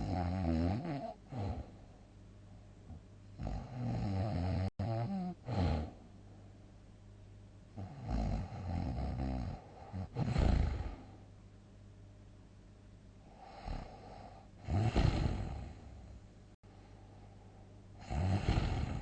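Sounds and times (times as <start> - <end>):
person snoring loudly: 0.0 - 1.7, 3.4 - 6.0, 7.8 - 11.1, 13.3 - 15.9, 18.0 - 19.0.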